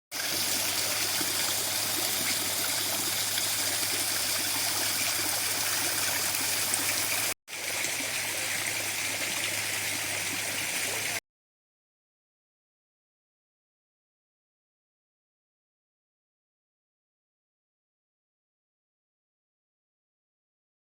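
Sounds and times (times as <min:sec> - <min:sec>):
flowing water rushing: 0:00.1 - 0:11.2.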